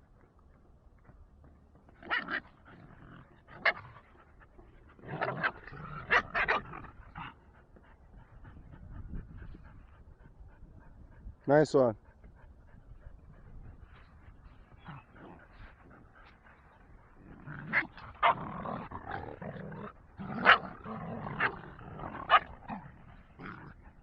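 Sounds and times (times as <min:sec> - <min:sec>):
dogs breathing: 0:01.4 - 0:05.9, 0:06.6 - 0:18.2, 0:18.8 - 0:24.0
dogs barking: 0:03.5 - 0:04.2, 0:05.0 - 0:07.3, 0:17.5 - 0:24.0.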